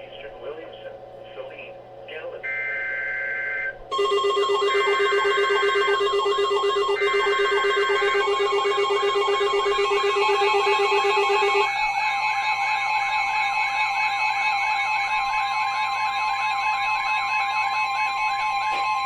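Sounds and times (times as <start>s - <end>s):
screeching data tones: 2.4s - 19.0s
warbling siren-like tone: 3.4s - 19.0s
steady alert tones: 3.9s - 11.7s.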